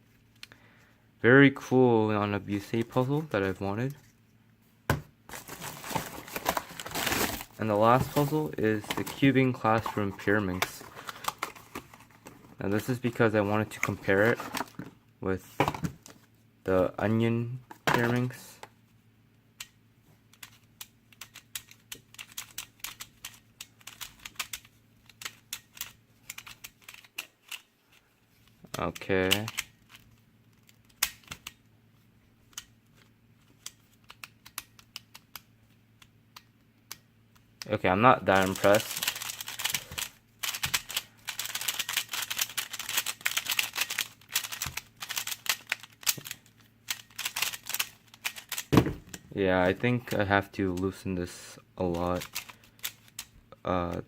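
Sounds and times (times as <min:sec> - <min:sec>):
plastic puzzle pieces clicking: 0:38.4 - 0:48.7.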